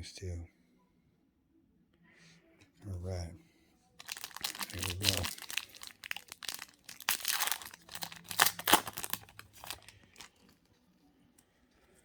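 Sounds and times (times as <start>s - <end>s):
wrapper tearing and crinkling: 4.0s - 10.5s.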